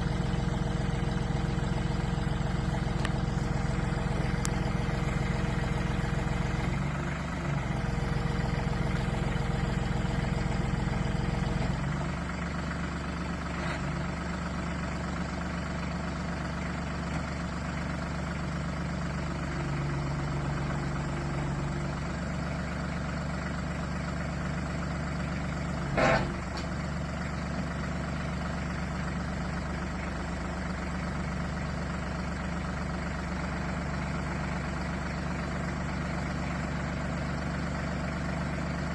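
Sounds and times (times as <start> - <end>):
tractor diesel engine running: 0.0 - 38.9.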